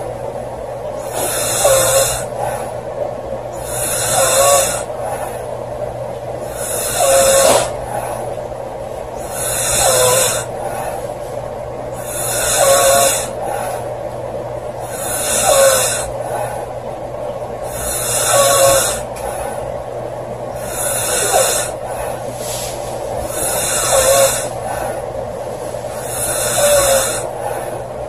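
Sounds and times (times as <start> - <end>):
girl snoring loudly: 1.0 - 2.6, 3.6 - 5.3, 6.4 - 8.2, 9.2 - 11.0, 12.0 - 13.8, 14.8 - 16.7, 17.6 - 19.6, 20.5 - 22.2, 23.2 - 25.0, 25.9 - 27.8.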